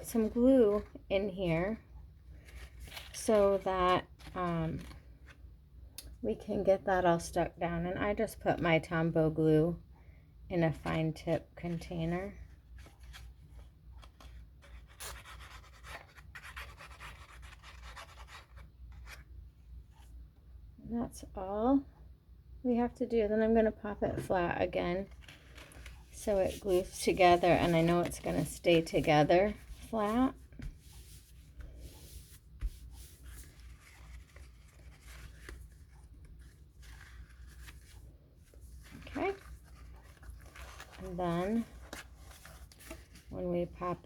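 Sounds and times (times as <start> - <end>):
cardstock rubbing and rustling: 25.0 - 44.0.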